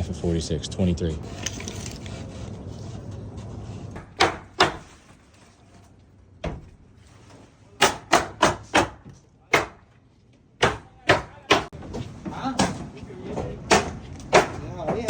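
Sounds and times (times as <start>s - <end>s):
hammer on wood: 4.0s - 5.0s, 7.8s - 9.9s, 10.6s - 11.8s, 13.4s - 15.0s.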